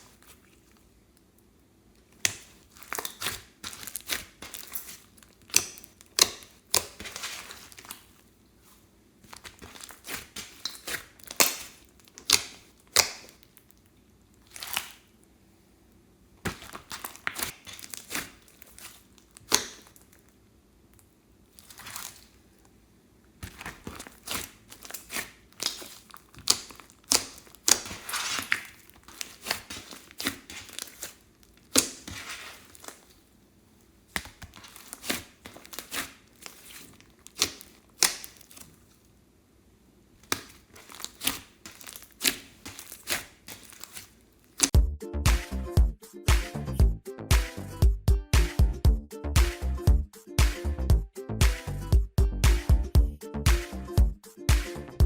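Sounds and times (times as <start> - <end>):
slime popping and crackling: 2.0 - 15.2, 16.4 - 20.4, 21.5 - 22.5, 23.4 - 33.3, 34.1 - 39.0, 40.2 - 44.8.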